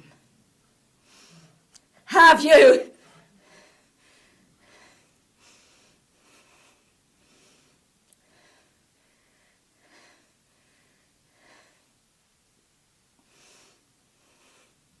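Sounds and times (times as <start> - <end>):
woman breathing heavily: 3.4 - 12.0.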